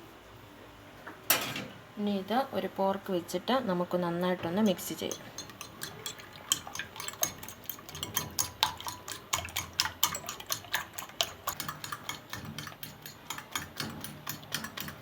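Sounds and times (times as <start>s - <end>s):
fork clicking on plate: 5.1s - 15.0s.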